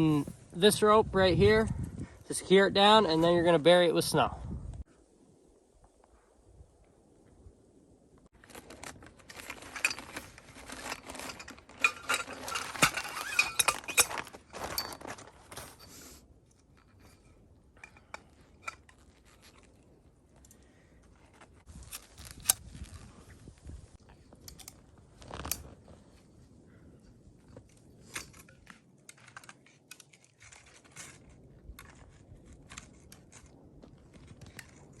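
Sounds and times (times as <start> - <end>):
snow crunching and scraping: 8.3 - 16.3.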